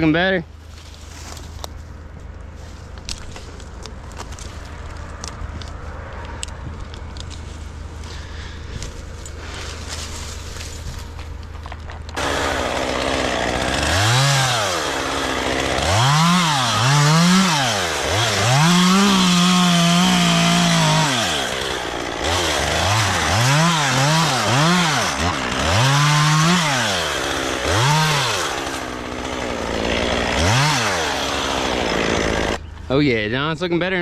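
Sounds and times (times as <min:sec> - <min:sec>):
chainsaw revving: 0:12.2 - 0:32.6.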